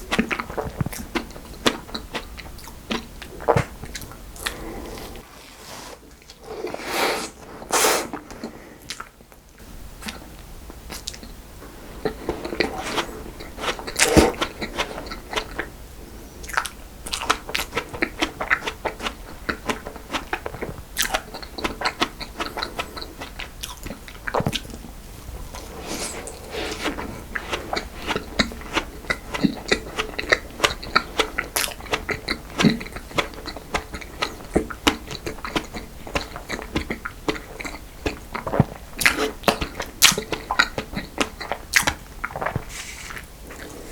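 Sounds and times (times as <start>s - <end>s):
wet chewing: 12.0s - 15.8s, 16.4s - 24.9s, 25.5s - 43.9s.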